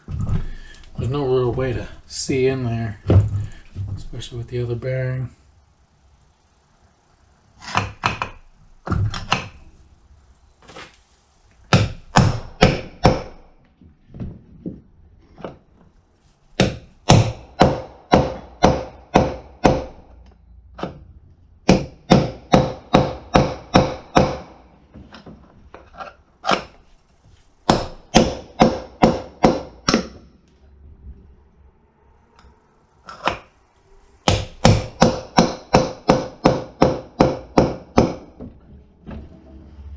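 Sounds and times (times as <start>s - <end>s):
hammer striking metal punch: 11.7s - 13.4s, 21.7s - 24.6s, 27.7s - 30.2s, 34.3s - 38.4s.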